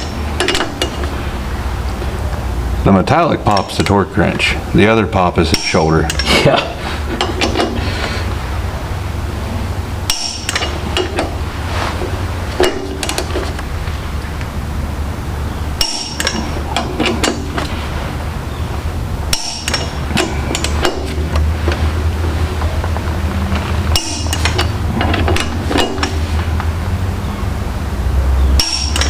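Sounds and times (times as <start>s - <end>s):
steady low hum: 0.0s - 29.0s
torque wrench clicking: 10.1s - 11.4s, 15.8s - 17.7s, 19.3s - 21.5s, 28.6s - 29.0s.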